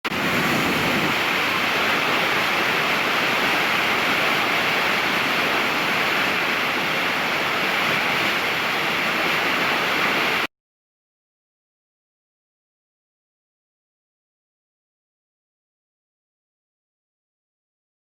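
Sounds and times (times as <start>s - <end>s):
steady rushing noise: 0.0s - 10.5s.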